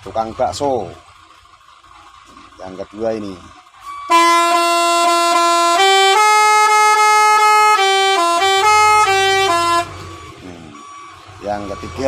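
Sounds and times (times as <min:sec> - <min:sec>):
horn playing chord melody: 0:04.1 - 0:10.0.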